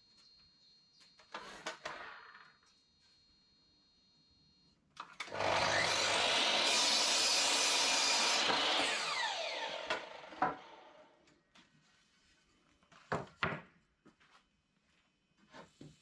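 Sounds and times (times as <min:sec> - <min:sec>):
electric saw cutting wood: 0:05.2 - 0:11.1
saw motor winding down whine: 0:05.2 - 0:11.1.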